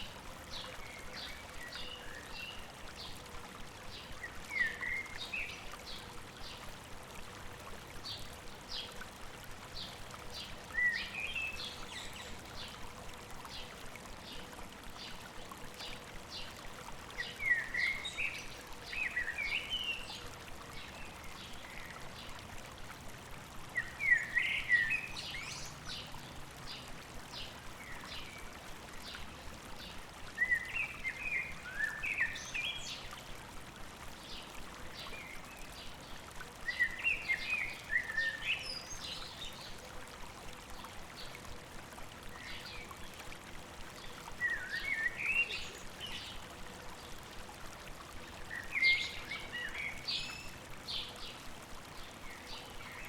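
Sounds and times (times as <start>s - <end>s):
songbird chirping and warbling: 44.4s - 46.4s.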